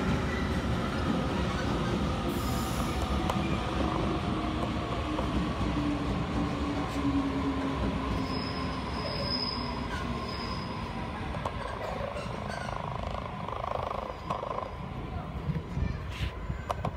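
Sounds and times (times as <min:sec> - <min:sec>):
electric train rumbling: 0:00.0 - 0:16.9
wheels and brakes squealing: 0:08.0 - 0:14.9.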